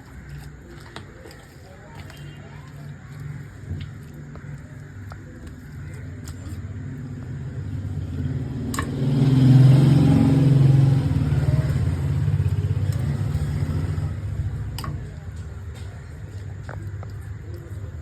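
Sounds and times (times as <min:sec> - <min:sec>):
vehicle engine passing by: 0:06.8 - 0:16.1.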